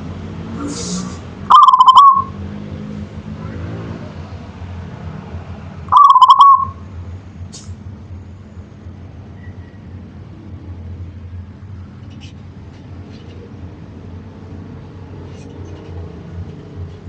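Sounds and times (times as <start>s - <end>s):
dove cooing: 1.5s - 2.3s, 5.9s - 6.8s.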